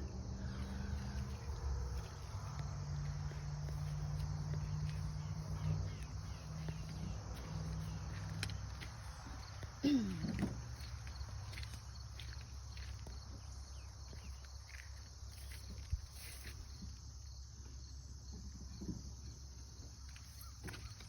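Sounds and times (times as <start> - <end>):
insects chirping: 0.0 - 21.0
footsteps in grass: 0.8 - 17.1.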